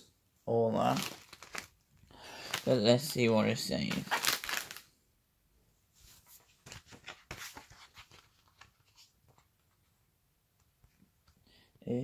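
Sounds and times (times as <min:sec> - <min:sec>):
crisp packet crinkling: 0:00.8 - 0:03.3, 0:03.9 - 0:04.9.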